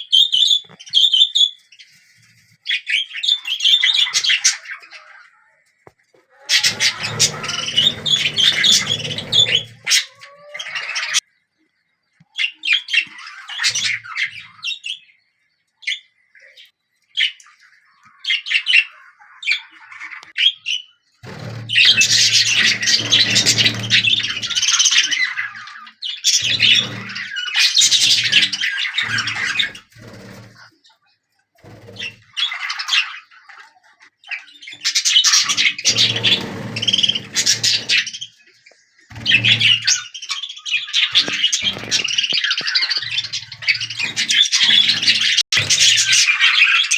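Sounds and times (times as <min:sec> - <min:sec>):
budgerigars chattering: 0:06.3 - 0:11.2.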